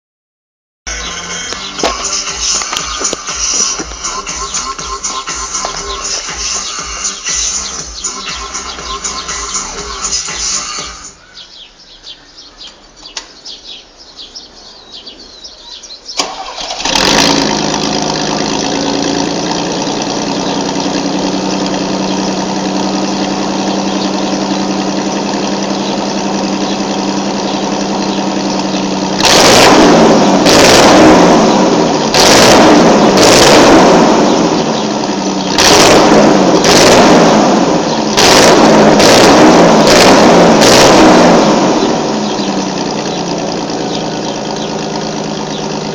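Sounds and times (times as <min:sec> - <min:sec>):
engine idling through exhaust: 0:00.9 - 0:11.2, 0:16.2 - 0:45.9
engine starting: 0:16.1 - 0:17.7
engine revving in short blips: 0:16.2 - 0:45.9.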